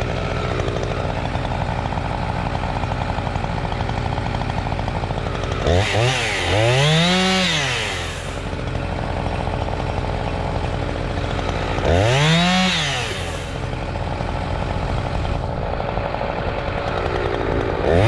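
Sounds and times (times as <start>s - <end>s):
chainsaw idling and revving: 0.0s - 18.0s.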